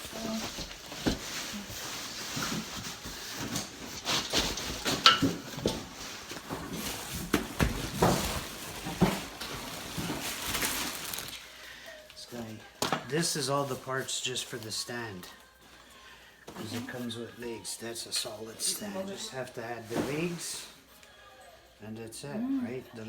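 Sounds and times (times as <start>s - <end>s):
packaging rustling: 0.0s - 11.7s.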